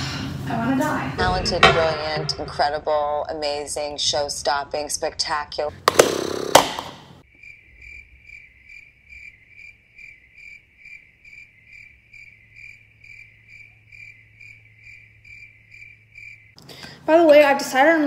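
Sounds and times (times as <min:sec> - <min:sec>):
cricket chirping: 0:07.2 - 0:16.6.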